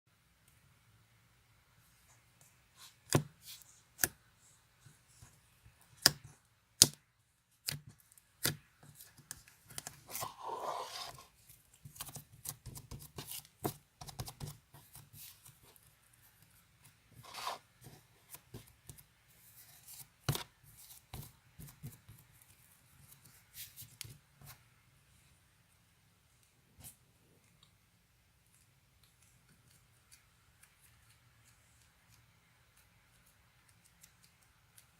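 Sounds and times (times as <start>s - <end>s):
rustling and scraping: 8.9s - 11.9s, 17.1s - 18.7s.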